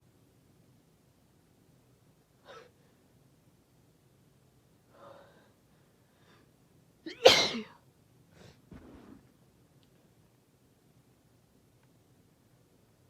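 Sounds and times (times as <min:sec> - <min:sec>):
faint short breaths: 0:04.9 - 0:06.6
woman sneezing: 0:07.1 - 0:07.8.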